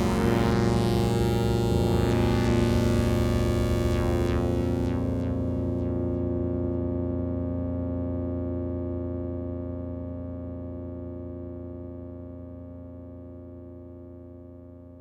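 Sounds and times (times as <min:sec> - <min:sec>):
synthesizer atmospheric chord: 0:00.0 - 0:07.0.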